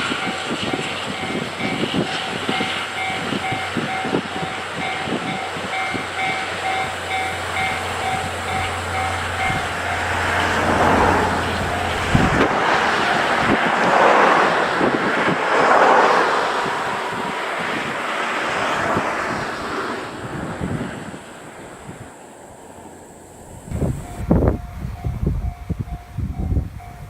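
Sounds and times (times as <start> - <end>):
level-crossing warning bell ringing: 0.0 - 13.4, 23.8 - 27.0
rushing noise: 0.0 - 26.6
passing train rumble: 0.0 - 27.0.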